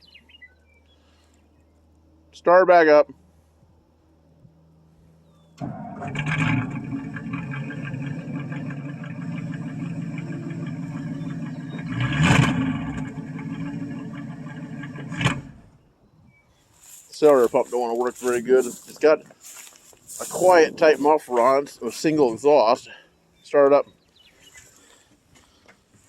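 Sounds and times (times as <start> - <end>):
car engine starting and running: 5.3 - 15.8
engine throttle surge: 5.6 - 15.8.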